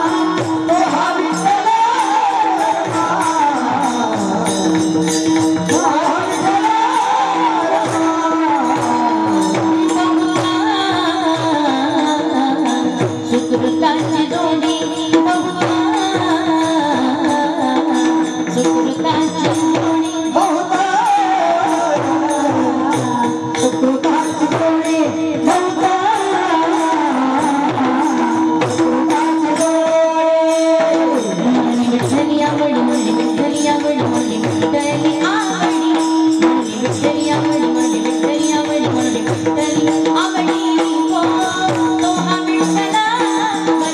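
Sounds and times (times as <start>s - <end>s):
quick dense percussion: 0.0s - 43.9s.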